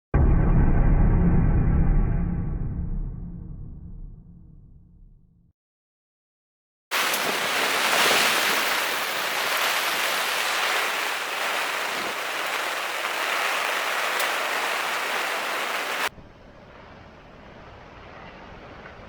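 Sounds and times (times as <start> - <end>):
heavy rain and wind: 6.9 - 16.1.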